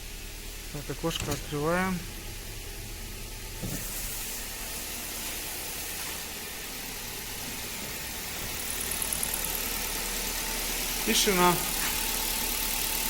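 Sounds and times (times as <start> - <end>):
car engine idling: 0.0 - 13.0
fuel injectors ticking: 7.6 - 13.0.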